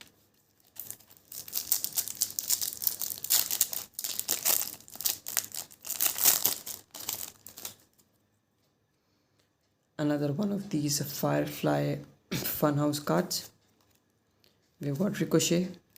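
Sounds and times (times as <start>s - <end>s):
foil wrapper crinkling and tearing: 0.5s - 8.0s.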